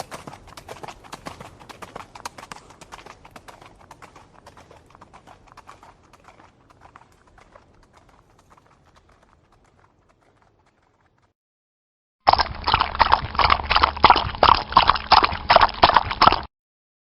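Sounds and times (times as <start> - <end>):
horse hooves clip-clopping: 0.0 - 11.3.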